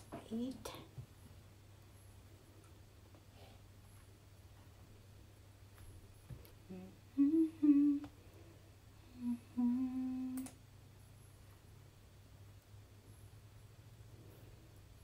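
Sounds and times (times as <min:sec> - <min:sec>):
woman humming: 0:06.6 - 0:08.2, 0:09.0 - 0:10.6.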